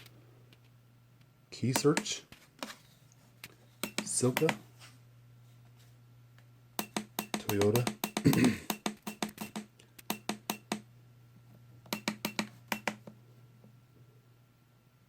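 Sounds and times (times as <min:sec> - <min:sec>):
control panel button clicks: 0:06.8 - 0:10.8, 0:11.9 - 0:13.0
low steady machine hum: 0:09.7 - 0:15.0.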